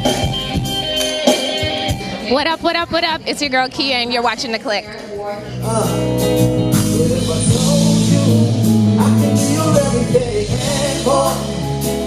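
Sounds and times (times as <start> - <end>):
live band music: 0.0 - 12.0
person singing: 5.6 - 12.0.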